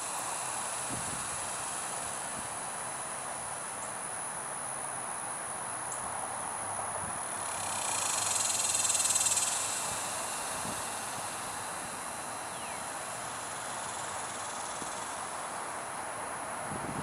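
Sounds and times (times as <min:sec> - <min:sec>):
faint high insect drone: 0:00.0 - 0:17.0
steady outdoor hiss: 0:00.0 - 0:17.0.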